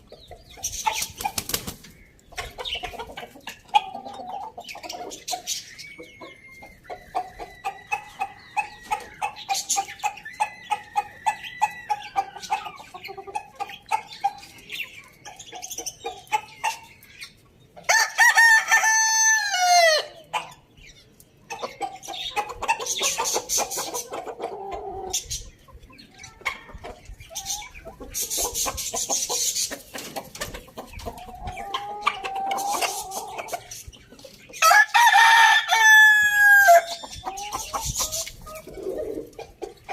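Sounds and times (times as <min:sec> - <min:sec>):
chickens clucking: 0:00.0 - 0:39.9
roosters crowing: 0:07.0 - 0:09.3, 0:10.4 - 0:12.7, 0:17.9 - 0:20.2, 0:34.6 - 0:37.7.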